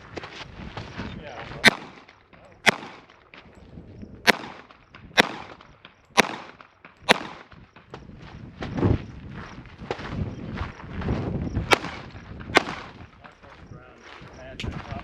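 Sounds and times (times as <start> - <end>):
pistol shots: 1.6 - 3.2, 4.2 - 7.9, 11.7 - 13.0.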